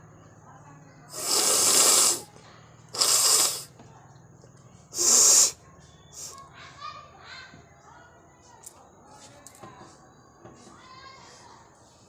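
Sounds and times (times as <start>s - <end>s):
person blowing hard through nose: 1.1s - 2.3s, 2.9s - 3.7s, 5.0s - 5.6s.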